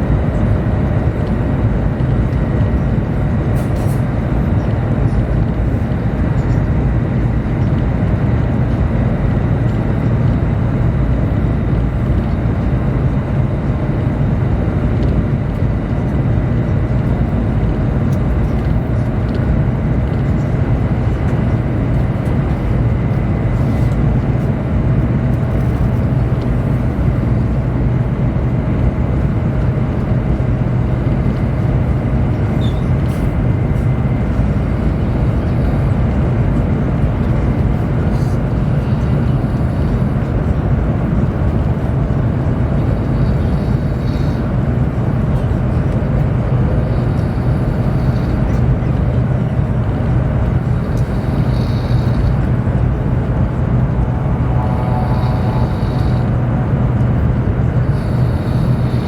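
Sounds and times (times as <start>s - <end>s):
train cabin rumble: 16.2s - 59.0s
faint high whine: 50.9s - 59.0s.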